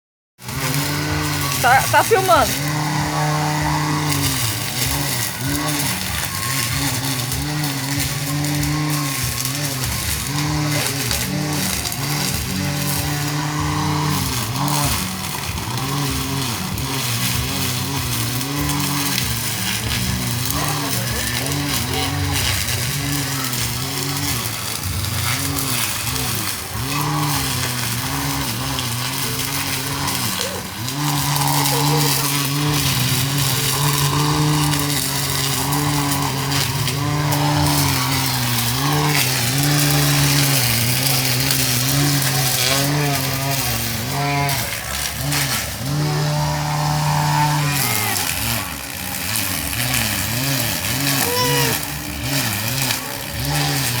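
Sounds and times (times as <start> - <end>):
electric brush cutter humming: 0.4 - 54.0.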